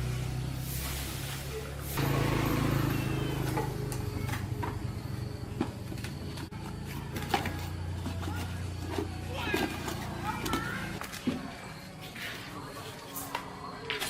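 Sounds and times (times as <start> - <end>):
chainsaw engine idling: 2.0 - 6.9.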